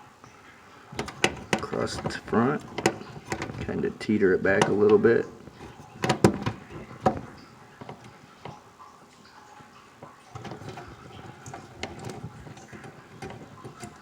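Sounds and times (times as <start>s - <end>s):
tools clicking and scraping on metal: 1.0s - 3.7s, 4.5s - 8.6s, 10.3s - 14.0s.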